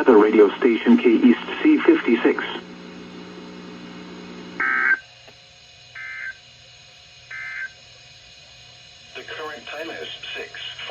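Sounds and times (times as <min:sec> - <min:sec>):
low steady radio hum: 0:00.0 - 0:05.0, 0:09.1 - 0:10.9.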